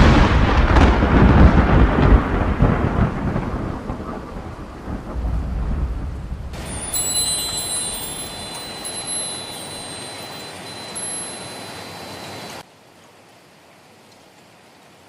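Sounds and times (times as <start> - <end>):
steady rain falling: 0.0 - 15.0
thin high ringing tone: 6.6 - 12.6.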